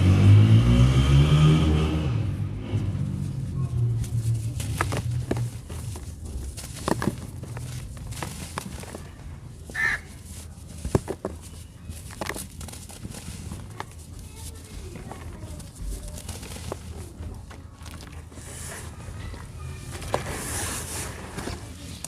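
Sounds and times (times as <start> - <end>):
low engine hum: 0.0 - 8.5.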